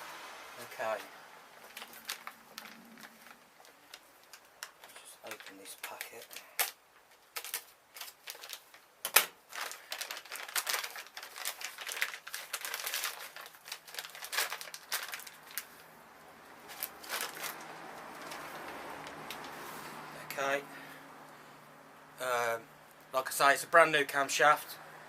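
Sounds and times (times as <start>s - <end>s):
packaging crinkling and rustling: 1.6s - 15.9s, 16.6s - 20.4s.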